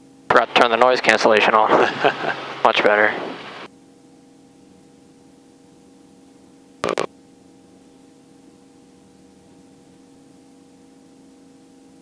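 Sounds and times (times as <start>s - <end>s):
intercom clicks: 6.8s - 7.1s.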